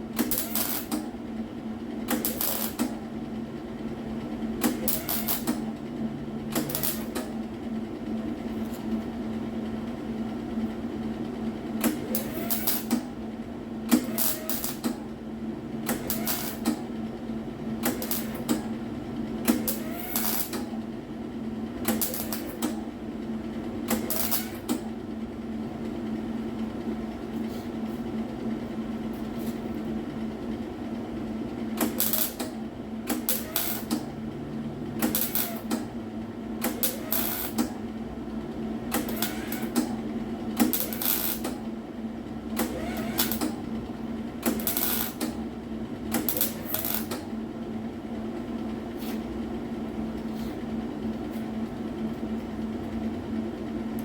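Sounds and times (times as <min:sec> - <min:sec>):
steady low hum: 0:00.0 - 0:54.0
welding crackle: 0:00.2 - 0:01.0, 0:02.2 - 0:02.8, 0:04.9 - 0:05.4, 0:14.2 - 0:14.8, 0:20.1 - 0:20.5, 0:22.0 - 0:22.5, 0:32.0 - 0:32.4, 0:35.1 - 0:35.6, 0:40.7 - 0:41.4, 0:44.5 - 0:45.2, 0:46.3 - 0:47.2.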